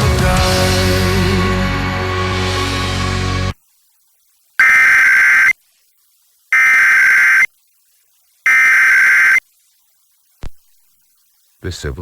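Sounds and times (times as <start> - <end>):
warbling digital data tones: 4.6 - 5.6, 6.5 - 7.5, 8.5 - 9.4.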